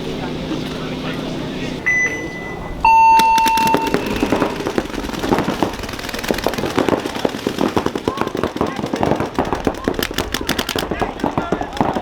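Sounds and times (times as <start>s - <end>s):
electronic buzzer long beep: 1.9s - 4.4s.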